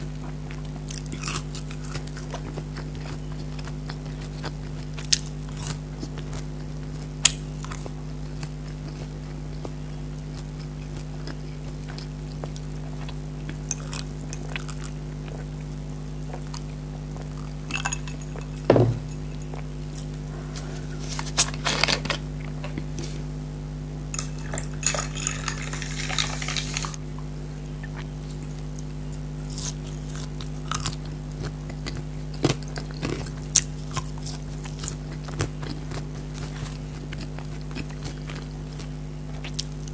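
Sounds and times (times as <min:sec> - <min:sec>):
eating bites and crunches: 0:00.0 - 0:23.4, 0:24.1 - 0:39.9
low hum: 0:11.6 - 0:31.3
dishes clinking: 0:17.7 - 0:19.6, 0:24.2 - 0:27.0
soda pouring hiss: 0:25.1 - 0:27.0.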